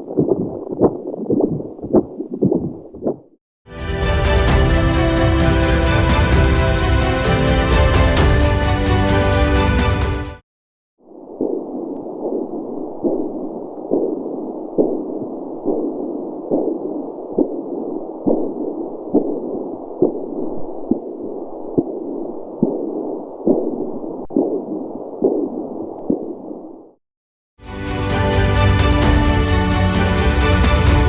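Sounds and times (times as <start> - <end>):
doppler whooshing heartbeat: 0.0 - 3.4, 11.3 - 26.6.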